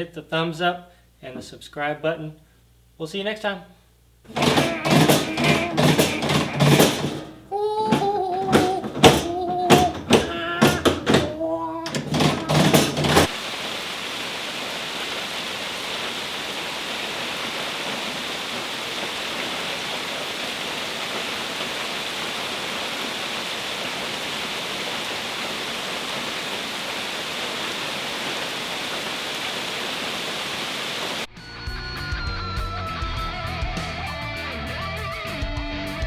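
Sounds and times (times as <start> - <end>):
steady hiss: 12.7 - 31.3.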